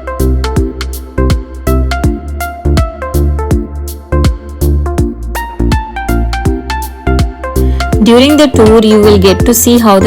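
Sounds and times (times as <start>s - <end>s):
sustained bass line: 0.0s - 10.0s
bass drum hits: 0.2s - 7.5s
melodic notes: 5.4s - 10.0s.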